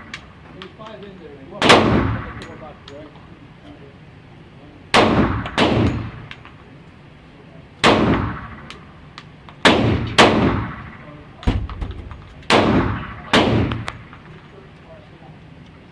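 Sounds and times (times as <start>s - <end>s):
pistol shots: 1.6s - 2.8s, 4.9s - 6.6s, 7.8s - 14.3s.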